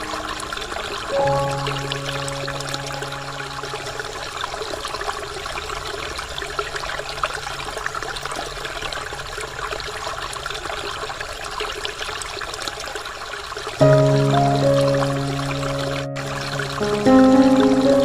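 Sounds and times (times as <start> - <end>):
waterfall splashing: 13.7 - 18.0.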